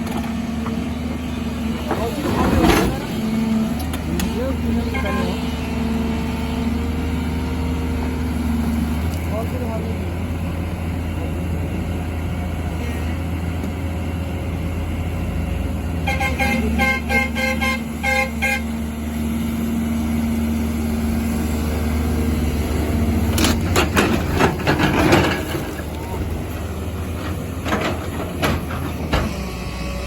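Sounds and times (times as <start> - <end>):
heavy machine engine running: 0.0 - 30.0
vehicle horn short toots: 16.1 - 18.7.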